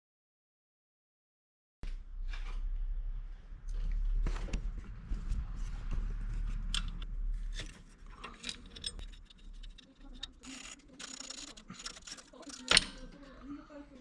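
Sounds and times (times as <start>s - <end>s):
low rumble: 1.8s - 10.4s
metal tools clinking: 6.5s - 13.3s.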